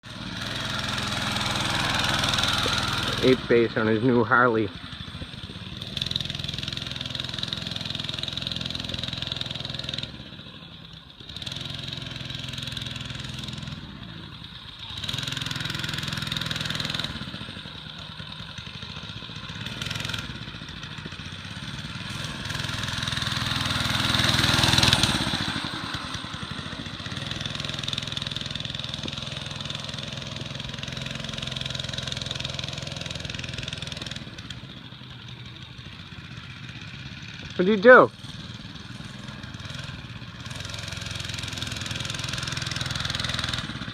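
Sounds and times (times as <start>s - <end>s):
small engine revving: 0.0s - 43.9s.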